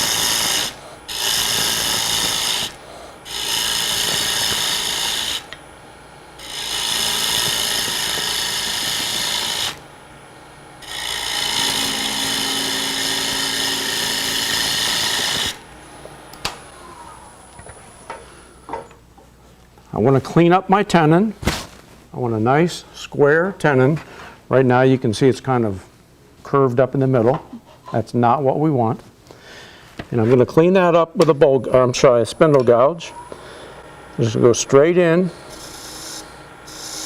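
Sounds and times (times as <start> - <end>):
gouge cutting wood on a lathe: 0.0 - 5.6, 6.4 - 9.8, 10.8 - 15.6, 35.4 - 37.0.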